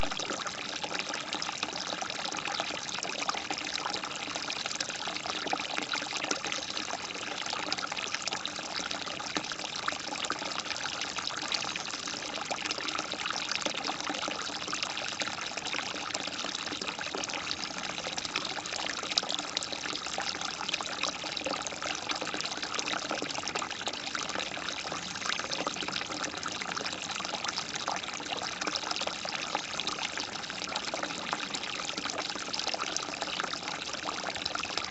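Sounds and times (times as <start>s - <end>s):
water trickling and splashing: 0.0s - 34.9s.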